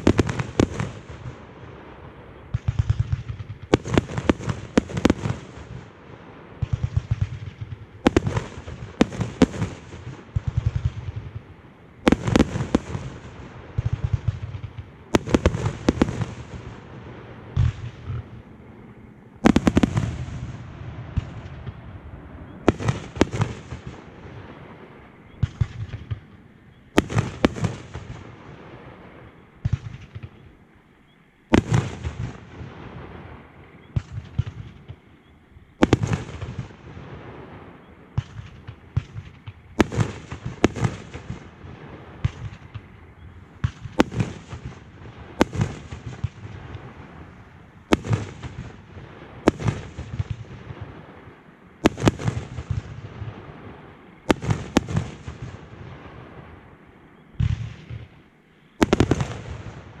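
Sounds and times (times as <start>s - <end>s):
fireworks crackling: 0.0s - 30.8s, 31.5s - 60.0s
rumbling echo: 0.7s - 30.5s.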